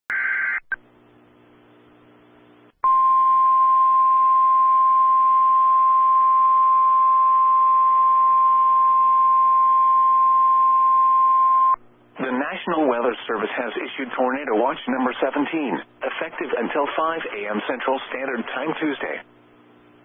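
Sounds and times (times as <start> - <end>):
faint radio hiss and hum: 0.4 - 2.8, 11.8 - 20.0.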